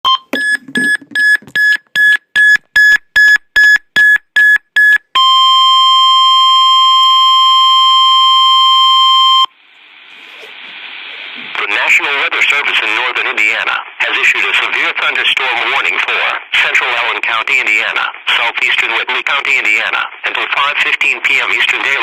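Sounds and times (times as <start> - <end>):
faint radio hiss: 9.1 - 22.0.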